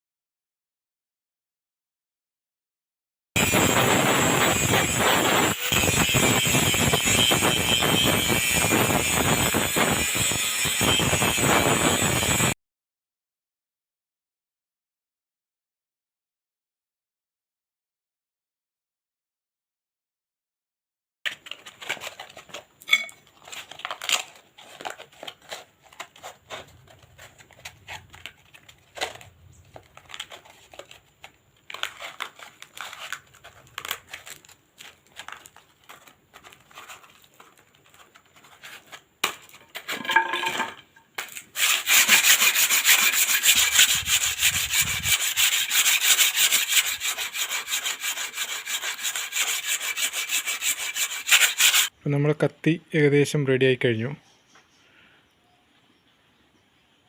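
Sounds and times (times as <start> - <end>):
blade being rubbed: 23.5 - 31.0, 41.3 - 51.9.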